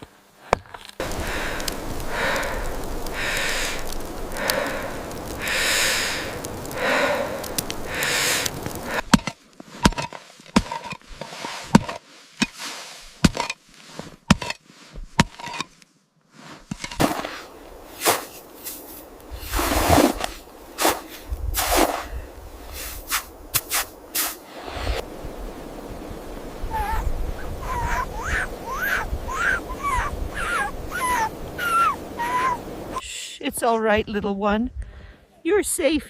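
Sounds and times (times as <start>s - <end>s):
sharp cracks and pops: 0.0s - 15.9s
steady rushing noise: 17.4s - 33.0s.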